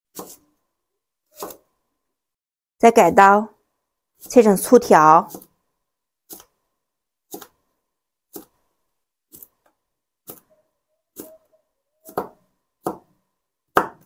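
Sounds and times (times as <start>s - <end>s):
knife chopping on cutting board: 0.1s - 0.4s, 1.3s - 1.6s, 5.3s - 5.5s, 6.3s - 6.5s, 7.3s - 7.6s, 8.3s - 8.6s, 12.1s - 13.1s, 13.7s - 14.0s.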